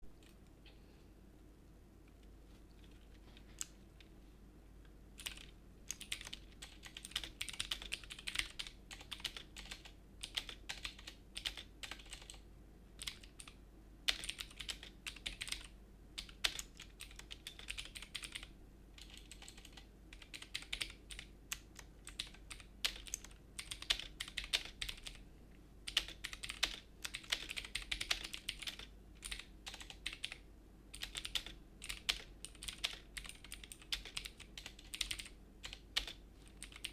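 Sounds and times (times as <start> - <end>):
mechanical keyboard typing: 5.2 - 12.4, 13.0 - 25.2, 25.9 - 36.9.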